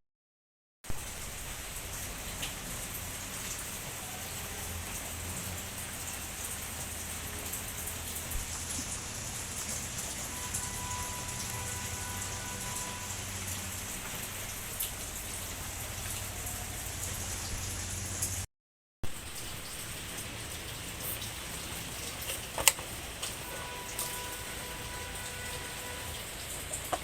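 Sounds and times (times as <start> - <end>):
steady watery hiss: 19.2 - 27.0.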